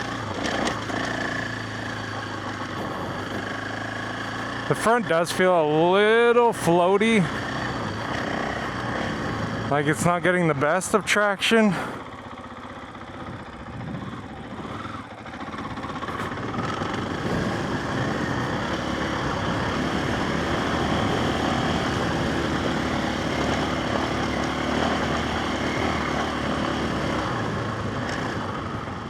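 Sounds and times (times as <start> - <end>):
dirt bike engine running: 0.0 - 29.0.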